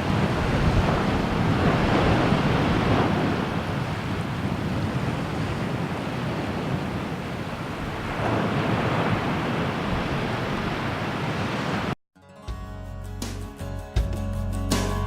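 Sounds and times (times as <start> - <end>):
waves washing in: 0.0 - 12.0
wind buffeting microphone: 0.0 - 12.0.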